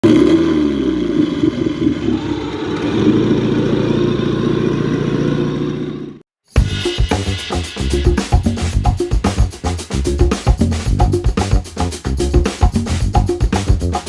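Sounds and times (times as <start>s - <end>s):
drum-led music: 6.5s - 14.0s.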